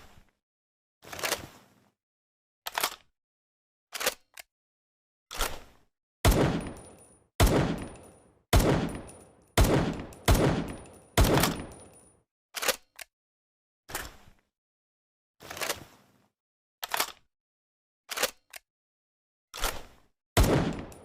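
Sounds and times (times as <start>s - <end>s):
imitated pistol shots: 6.2s - 11.9s, 20.4s - 21.0s.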